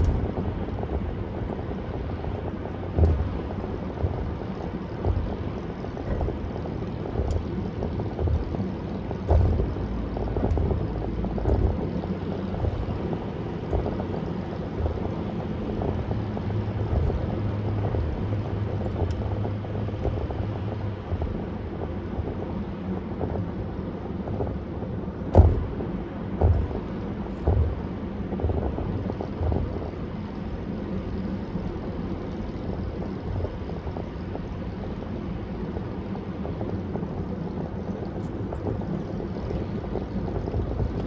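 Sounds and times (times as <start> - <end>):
thumps from road bumps: 0.0 - 30.6
tyre and engine rumble: 0.0 - 41.0
wind noise: 0.0 - 41.0.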